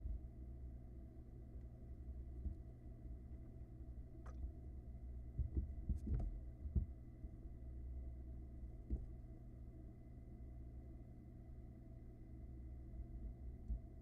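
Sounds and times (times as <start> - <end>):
soft thumps and knocks: 2.3 - 3.4, 5.3 - 7.0, 8.8 - 9.2
microphone hum: 5.3 - 6.9.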